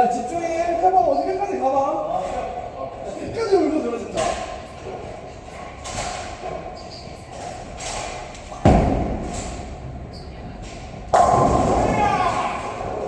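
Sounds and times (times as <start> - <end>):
bowling ball thud: 8.6 - 10.0, 10.8 - 13.0
bowling alley din: 8.7 - 13.0.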